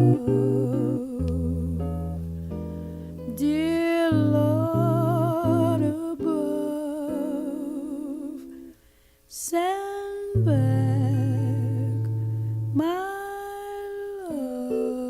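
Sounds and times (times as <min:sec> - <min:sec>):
voice singing with vibrato: 0:00.0 - 0:02.1, 0:03.3 - 0:08.8, 0:09.5 - 0:12.1.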